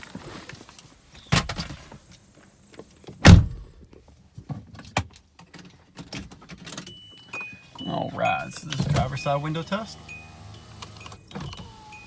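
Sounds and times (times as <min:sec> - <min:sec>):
car door shutting: 0:03.2 - 0:03.7, 0:08.2 - 0:12.0.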